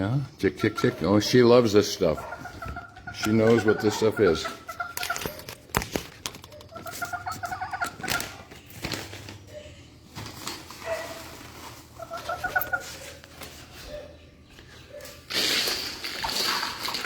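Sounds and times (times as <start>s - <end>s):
hen clucking: 0.0s - 5.7s, 6.5s - 8.7s, 11.7s - 15.0s.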